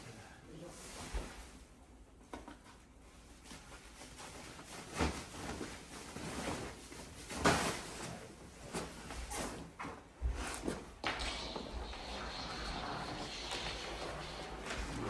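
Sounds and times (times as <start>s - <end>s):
handling knocks and rustles: 2.2s - 11.2s.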